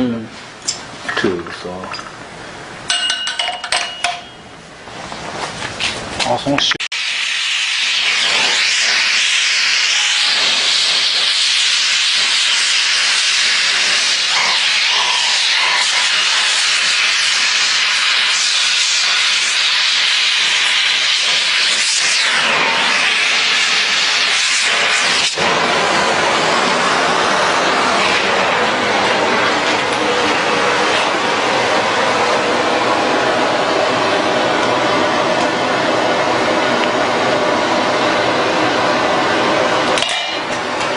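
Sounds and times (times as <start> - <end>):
welding torch flame hissing: 6.8 - 38.0.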